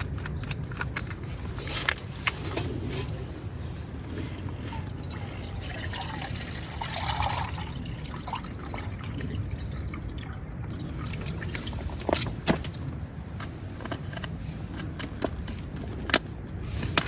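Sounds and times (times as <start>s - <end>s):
water pouring and trickling: 4.6s - 12.2s.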